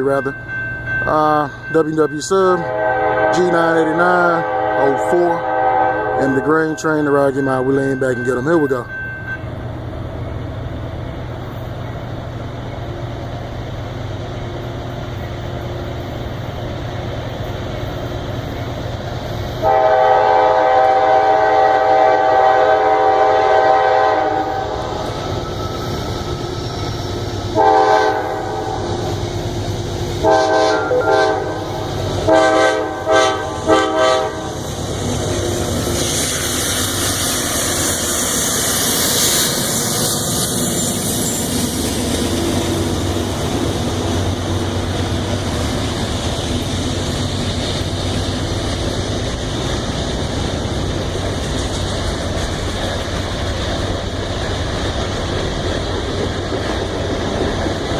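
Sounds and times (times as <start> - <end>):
diesel locomotive engines running: 0.0 - 57.9
train rumble and rail noise: 0.0 - 57.9
train air horn blasts: 2.6 - 6.6, 19.6 - 24.8, 27.5 - 29.1, 30.2 - 34.6.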